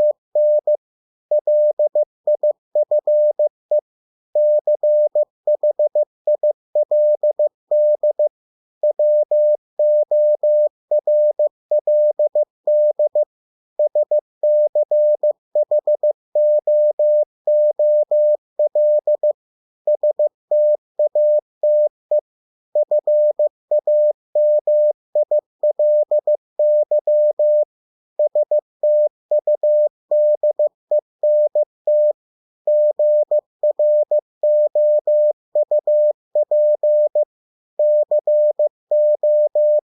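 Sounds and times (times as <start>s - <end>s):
morse code beep tone: 0.0s - 3.8s, 4.4s - 22.2s, 22.8s - 39.9s.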